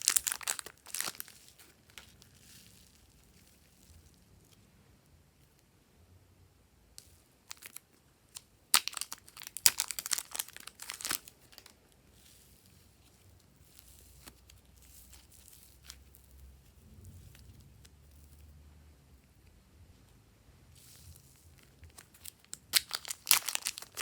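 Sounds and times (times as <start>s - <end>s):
slime crackling and popping: 0.0s - 4.6s, 7.0s - 18.4s, 20.8s - 24.0s
slime squishing: 0.0s - 4.6s, 8.7s - 18.5s, 20.8s - 24.0s.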